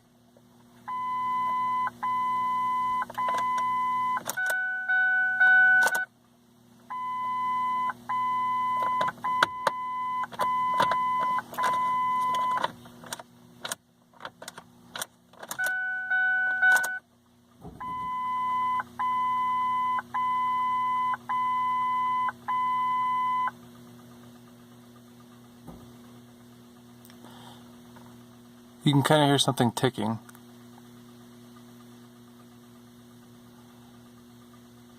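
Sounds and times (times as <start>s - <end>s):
low hum: 0.0s - 28.8s
warning beeps: 0.9s - 6.1s, 6.9s - 12.7s, 15.6s - 17.0s, 17.8s - 23.6s.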